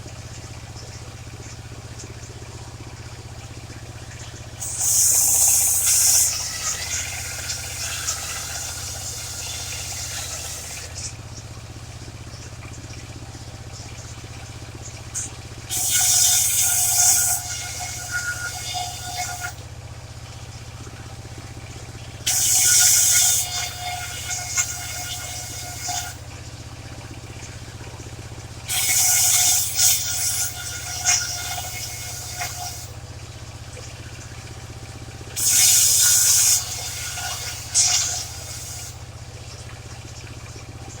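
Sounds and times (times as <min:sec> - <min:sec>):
sawmill engine running: 0:00.0 - 0:41.0
ringing whine of saw blade: 0:04.6 - 0:10.9, 0:15.2 - 0:19.6, 0:22.3 - 0:26.2, 0:28.7 - 0:33.0, 0:35.4 - 0:39.0
saw blade cutting wood: 0:04.6 - 0:11.1, 0:15.2 - 0:19.6, 0:22.3 - 0:26.2, 0:28.7 - 0:33.0, 0:35.4 - 0:39.0.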